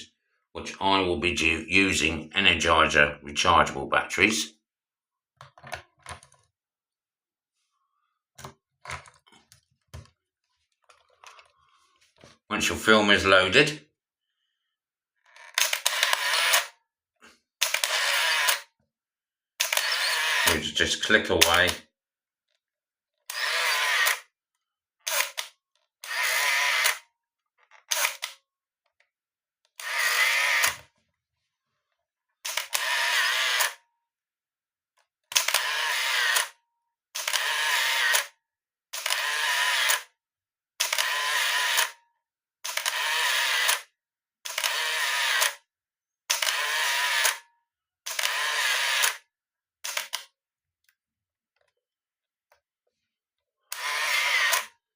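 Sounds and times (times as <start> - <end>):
camera motor winding film: 15.3 - 16.7, 17.6 - 18.7, 19.6 - 20.6, 23.3 - 24.3, 25.1 - 27.0, 27.8 - 28.3, 29.8 - 30.8, 32.4 - 33.8, 35.3 - 36.6, 37.2 - 38.3, 39.0 - 40.1, 40.8 - 42.0, 42.6 - 45.6, 46.3 - 47.4, 48.1 - 49.2, 49.8 - 50.2, 53.7 - 54.7
camera shutter whir-click: 15.5 - 16.7, 17.6 - 18.7, 19.6 - 20.6, 23.3 - 24.2, 25.1 - 27.0, 27.9 - 28.4, 29.8 - 30.8, 32.4 - 33.8, 35.3 - 36.6, 37.2 - 38.3, 39.0 - 40.1, 40.8 - 42.0, 42.6 - 45.6, 46.3 - 47.4, 48.1 - 49.2, 49.8 - 50.2, 53.7 - 54.7
camera shutter click: 15.6 - 16.7, 17.6 - 18.6, 42.7 - 43.8, 48.1 - 49.2, 49.8 - 50.2, 53.8 - 54.7.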